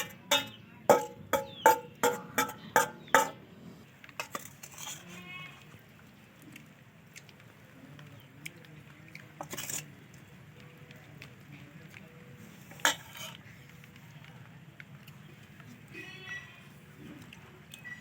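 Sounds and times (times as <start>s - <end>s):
metal spatula tapping a pan: 0.0s - 3.4s
spatula scraping: 4.2s - 5.8s, 9.4s - 10.0s, 12.4s - 13.8s.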